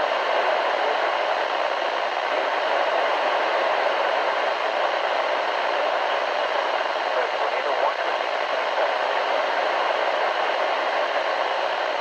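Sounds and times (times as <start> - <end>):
radio static hiss: 0.0 - 12.0.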